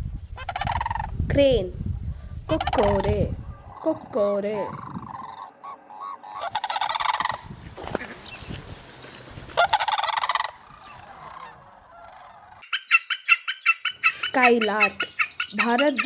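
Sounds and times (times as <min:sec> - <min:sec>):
crane rattling calls: 0:02.5 - 0:07.5, 0:09.6 - 0:16.0.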